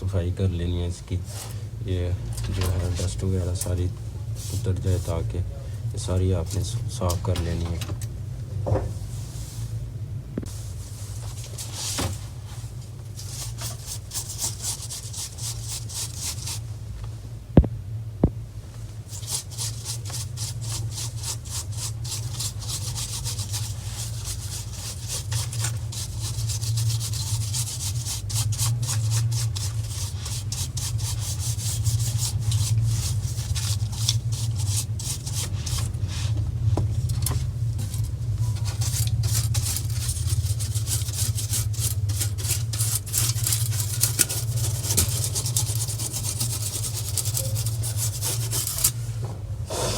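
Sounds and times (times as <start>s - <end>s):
steady low hum: 0.0s - 49.9s
brush scrubbing scratchy strokes: 2.4s - 5.4s, 10.8s - 16.7s, 19.0s - 36.4s, 37.0s - 49.9s.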